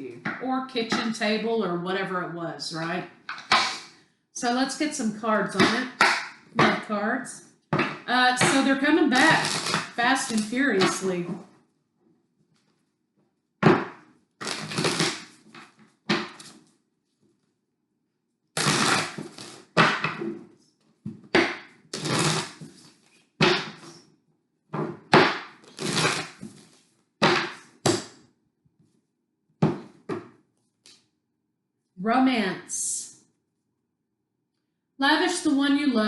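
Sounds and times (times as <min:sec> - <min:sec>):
cards being shuffled: 0:13.8 - 0:16.8.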